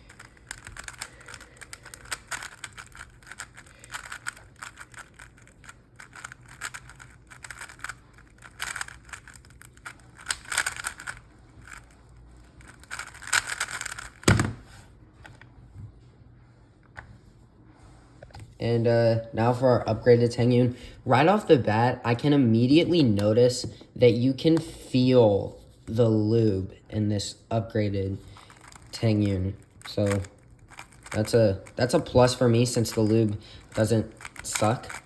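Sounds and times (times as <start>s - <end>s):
speed cube plastic clicking: 0.0s - 14.6s, 28.2s - 35.0s.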